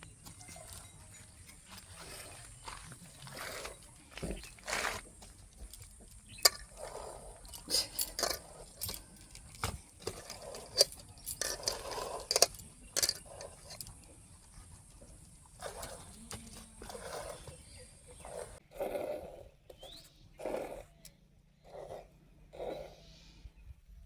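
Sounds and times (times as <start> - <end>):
metallic clinks and knocks: 4.2 - 14.5.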